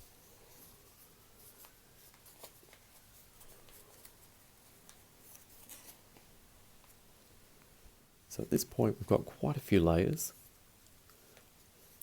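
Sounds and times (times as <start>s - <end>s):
paper crinkling and creasing: 0.0s - 7.0s.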